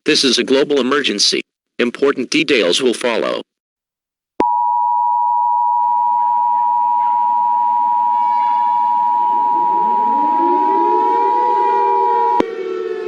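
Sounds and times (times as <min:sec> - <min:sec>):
two-tone alert beep: 0:04.4 - 0:10.2
rising siren wail: 0:06.1 - 0:13.0.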